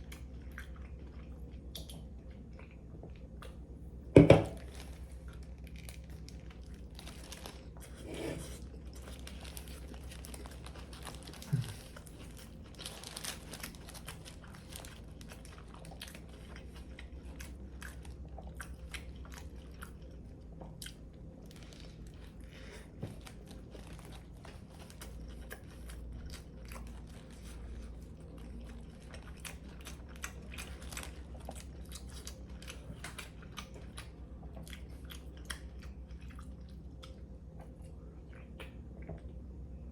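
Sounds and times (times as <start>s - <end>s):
low steady hum: 0.0s - 39.9s
person crunching sandwich: 4.6s - 20.1s.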